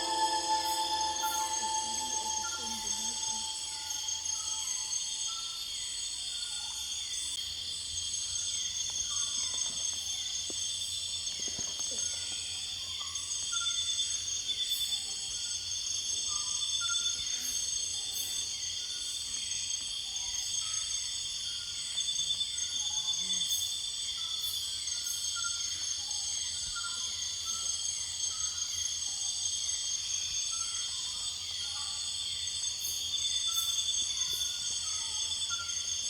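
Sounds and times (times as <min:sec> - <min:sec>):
insects trilling: 0:00.0 - 0:05.1.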